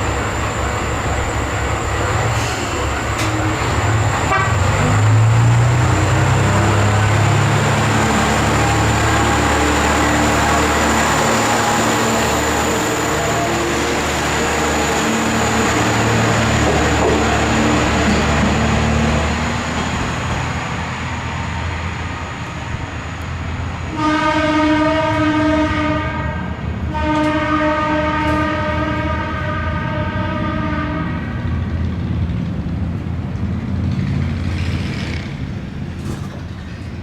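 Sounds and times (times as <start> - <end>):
diesel railcar engine humming: 0.0 - 37.0
train horn blasts: 4.2 - 5.1, 23.9 - 31.5.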